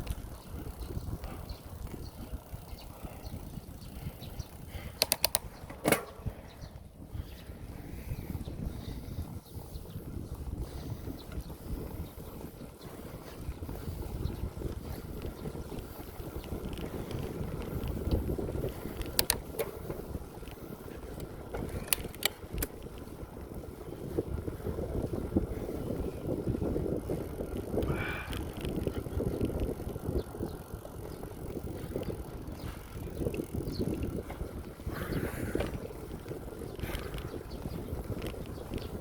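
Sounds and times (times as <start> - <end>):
bicycle tyre rumble on pavement: 0.0 - 39.0
wind rushing over microphone: 0.0 - 39.0
sharp clicks: 4.8 - 6.3, 19.0 - 19.8, 21.2 - 23.1.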